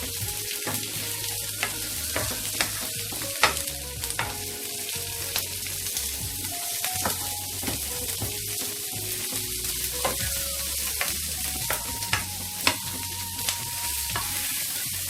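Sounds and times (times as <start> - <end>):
food sizzling in a pan: 0.0 - 15.0.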